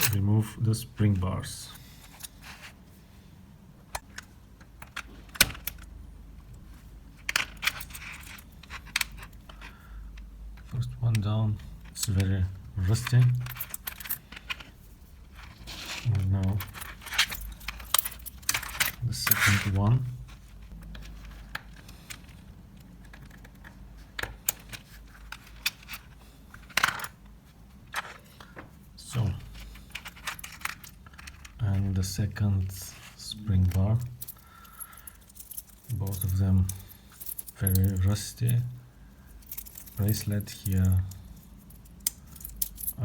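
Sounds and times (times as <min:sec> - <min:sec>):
small metallic clicks: 0:39.4 - 0:43.0.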